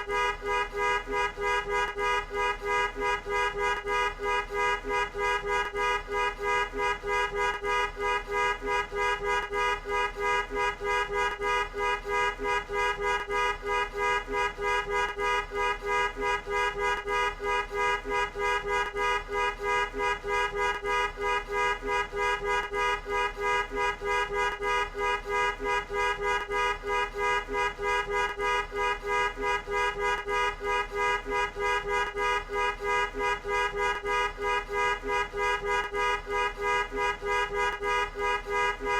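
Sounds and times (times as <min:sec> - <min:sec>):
two-tone car horn blasts: 0:00.0 - 0:38.9.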